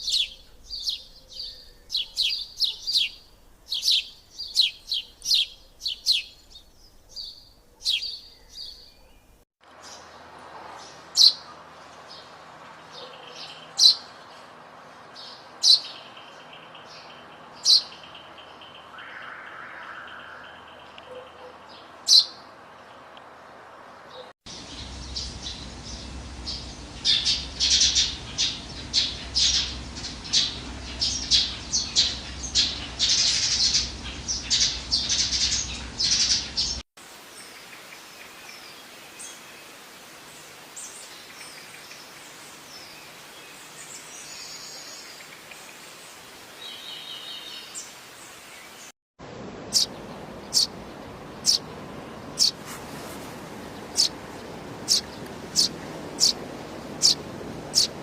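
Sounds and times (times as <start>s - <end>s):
sparrows chirping: 0.0s - 22.5s, 24.0s - 36.8s, 49.6s - 58.0s.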